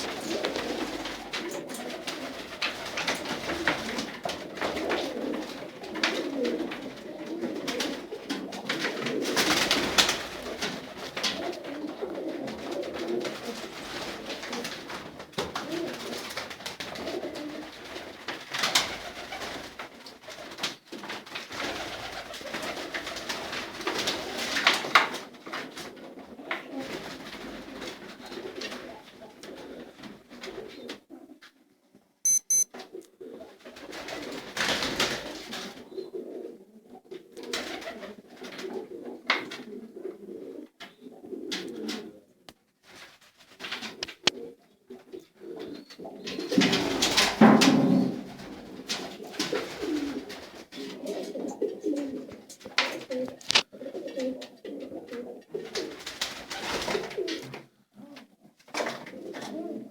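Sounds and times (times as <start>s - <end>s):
pigeons cooing: 0.0s - 20.7s, 25.4s - 31.4s, 33.2s - 42.5s, 43.8s - 59.9s
short beep: 32.3s - 32.7s.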